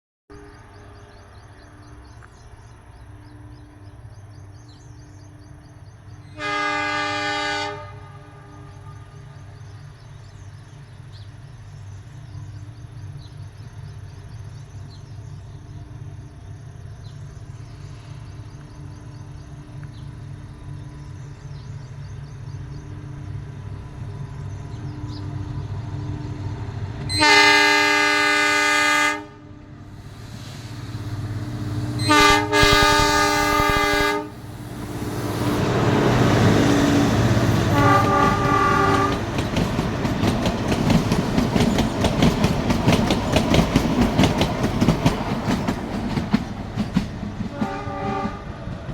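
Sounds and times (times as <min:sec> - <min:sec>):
diesel locomotive engine: 0:00.3 - 0:48.9
train wheels passing: 0:00.4 - 0:48.9
locomotive horn blasts: 0:06.3 - 0:09.4, 0:27.1 - 0:29.8, 0:31.9 - 0:34.5, 0:37.6 - 0:39.3, 0:47.5 - 0:48.6.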